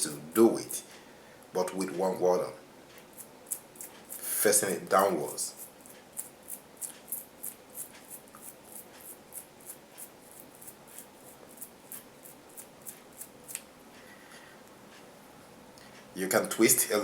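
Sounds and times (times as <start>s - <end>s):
toothbrush scrubbing mesh: 3.1s - 13.6s.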